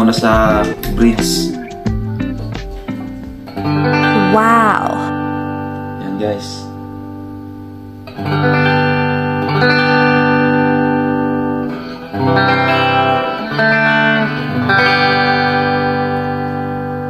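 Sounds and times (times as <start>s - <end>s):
electric guitar strummed chords: 0.0s - 17.0s.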